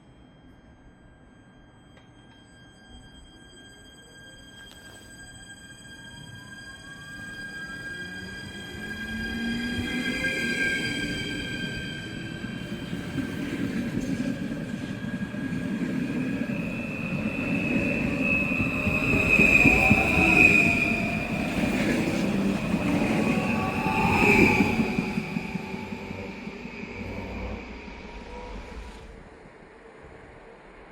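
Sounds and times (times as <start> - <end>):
high wheel squeal: 2.4 - 29.2
train rumbling on rails: 6.8 - 30.9.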